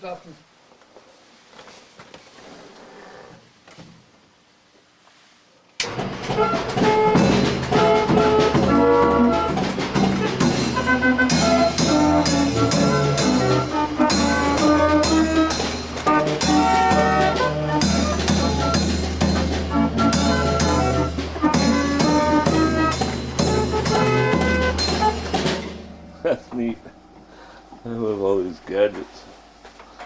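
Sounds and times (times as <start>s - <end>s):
music with steady beat: 5.9s - 26.3s.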